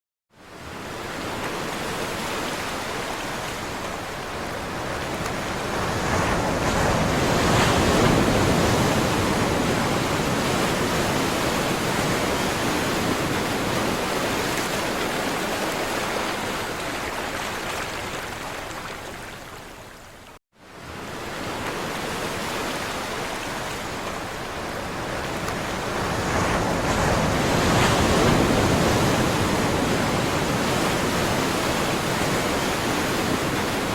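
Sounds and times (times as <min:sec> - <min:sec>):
waves washing on a shore: 0:00.4 - 0:33.9.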